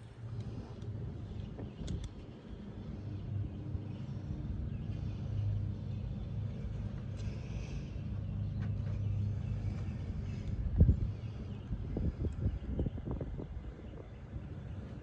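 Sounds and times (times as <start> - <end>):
vehicle engine running: 0.0 - 15.0.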